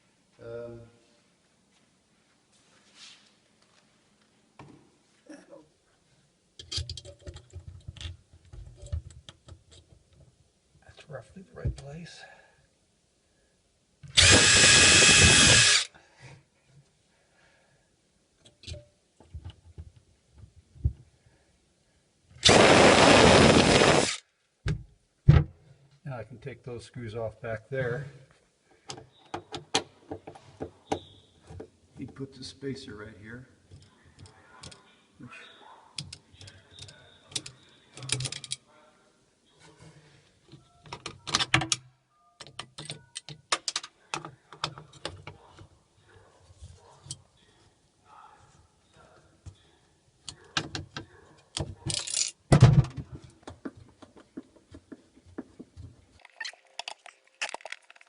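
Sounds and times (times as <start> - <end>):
handling knocks and clicks: 6.6 - 10.4, 42.4 - 45.7, 50.2 - 58.0
power drill drilling into wood: 14.2 - 15.9, 22.4 - 24.2
metal hardware clinking: 51.9 - 52.5.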